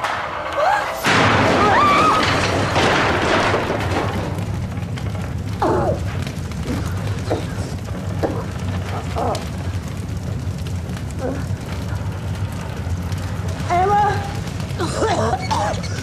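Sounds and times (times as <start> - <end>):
fire rumbling and crackling: 0.0 - 16.0.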